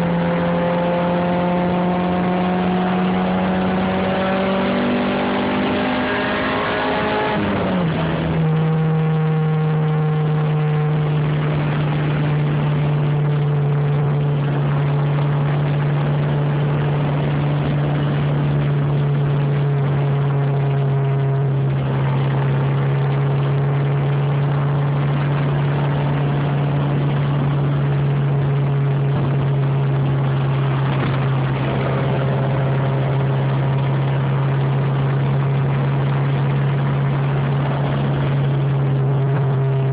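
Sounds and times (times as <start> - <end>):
car engine running at high revs: 0.0 - 39.9.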